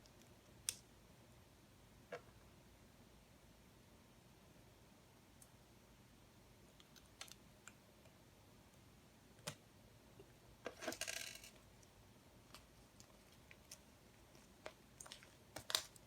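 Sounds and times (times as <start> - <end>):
plastic pieces clicking and rattling: 10.7 - 11.6.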